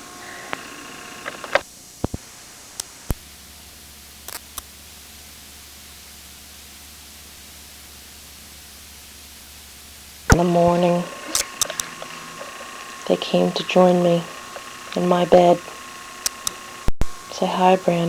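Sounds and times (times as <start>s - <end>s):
faint low hum: 0.0s - 18.0s
steady hiss: 0.0s - 18.0s
camcorder handling clicks: 11.3s - 13.0s.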